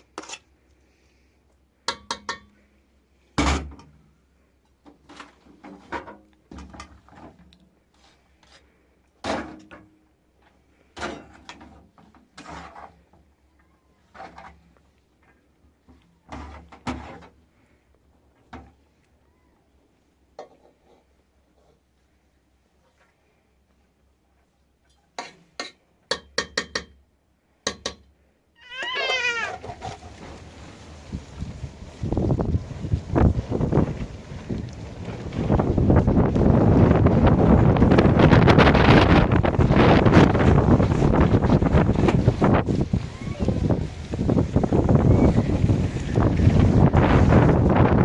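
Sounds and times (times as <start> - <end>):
animal crying: 28.6 - 29.6.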